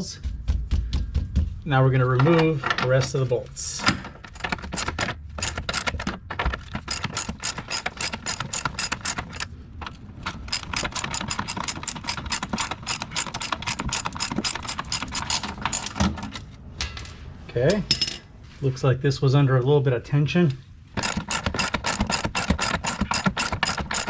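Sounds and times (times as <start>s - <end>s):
ratchet wrench clicking: 6.6s - 9.5s, 10.3s - 16.0s, 21.0s - 24.0s.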